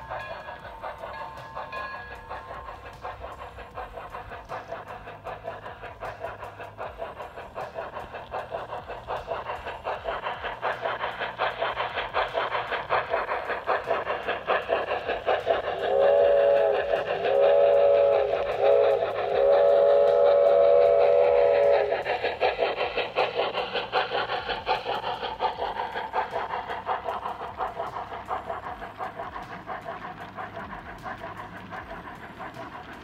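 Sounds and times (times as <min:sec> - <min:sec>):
model train chuffing: 0:00.0 - 0:33.0
train whistle blasts: 0:15.9 - 0:21.9.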